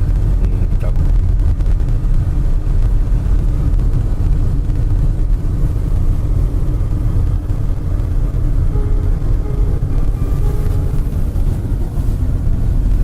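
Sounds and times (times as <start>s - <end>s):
wind buffeting the microphone: 0.0s - 13.0s.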